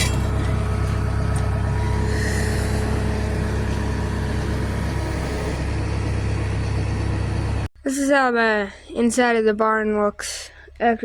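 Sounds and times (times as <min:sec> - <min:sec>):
tractor engine humming: 0:00.0 - 0:07.7.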